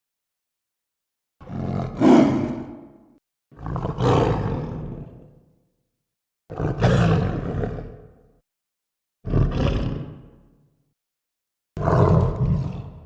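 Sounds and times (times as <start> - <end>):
creature roars: 1.4 - 3.0, 3.6 - 5.3, 11.8 - 13.0.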